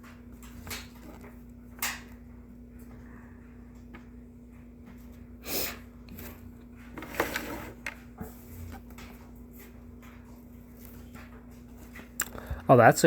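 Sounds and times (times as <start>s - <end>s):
person sniffing: 5.4s - 5.8s.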